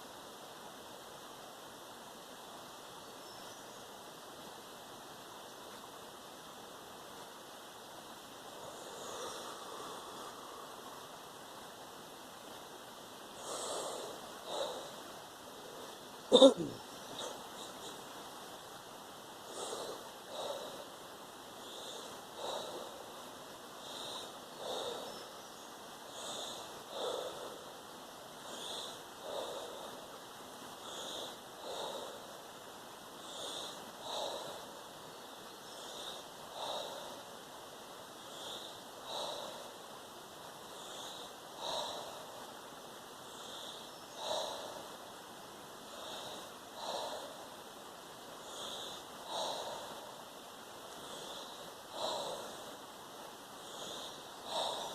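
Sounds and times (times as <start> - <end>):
person breathing forcefully: 13.4 - 18.1, 19.4 - 25.3, 26.1 - 34.9, 35.8 - 40.0, 40.6 - 45.0, 45.9 - 54.9
man breathing forcefully: 40.6 - 45.0, 45.9 - 54.9.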